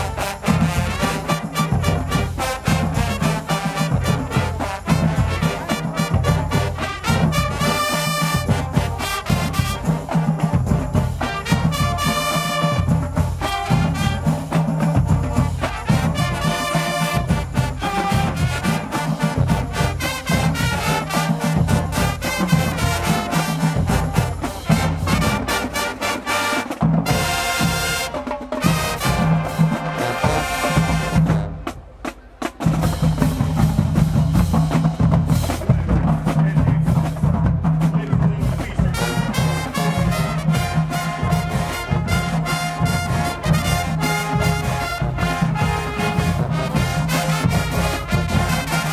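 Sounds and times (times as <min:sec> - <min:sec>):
drumline: 0:00.0 - 0:48.9
marching band brass horns: 0:00.0 - 0:48.9.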